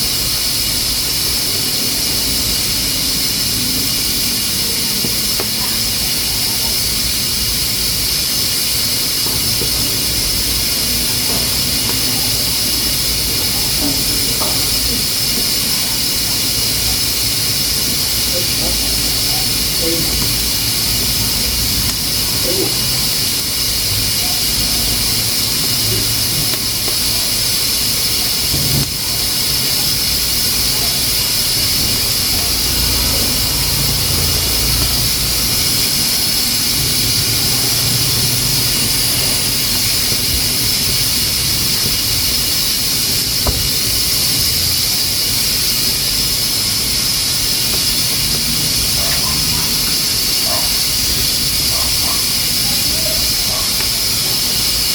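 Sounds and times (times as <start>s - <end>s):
pressure cooker hissing: 0.0s - 54.9s.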